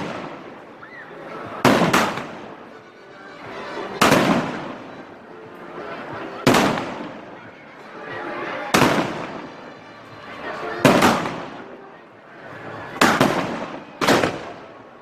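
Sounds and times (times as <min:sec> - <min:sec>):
fireworks bangs: 0:00.0 - 0:00.6, 0:01.6 - 0:02.6, 0:04.0 - 0:04.7, 0:06.4 - 0:07.2, 0:08.7 - 0:09.4, 0:10.8 - 0:11.6, 0:13.0 - 0:14.8.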